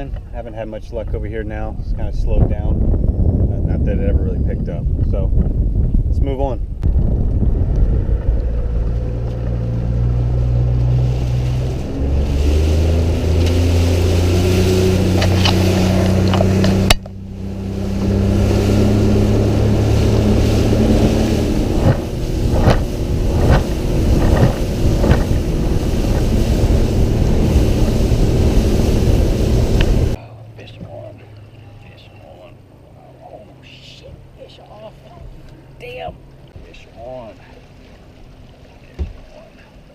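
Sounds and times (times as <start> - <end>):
outboard motor running: 6.8 - 32.1.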